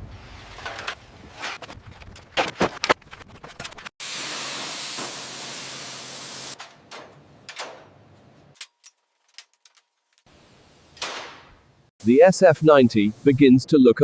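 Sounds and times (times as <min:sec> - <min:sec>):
spray gun hissing: 0:04.0 - 0:06.6, 0:12.0 - 0:13.6.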